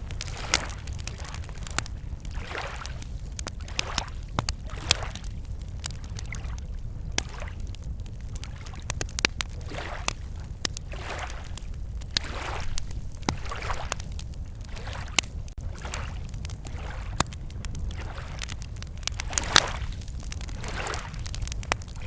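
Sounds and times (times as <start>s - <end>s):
lake waves lapping shore: 0.0s - 5.3s, 9.5s - 17.2s, 17.9s - 18.5s, 19.2s - 22.0s
campfire crackling and popping: 0.0s - 22.0s.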